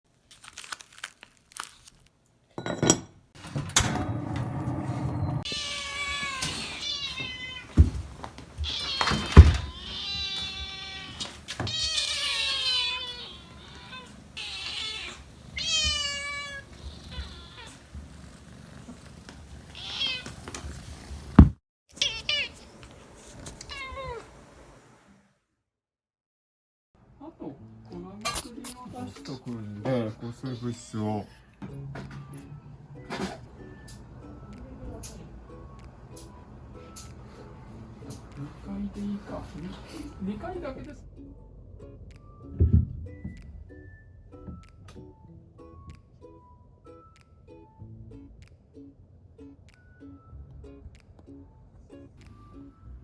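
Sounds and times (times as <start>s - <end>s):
kitten meowing: 5.4s - 7.8s, 8.6s - 17.9s, 19.7s - 20.4s, 22.0s - 22.7s, 23.6s - 24.3s.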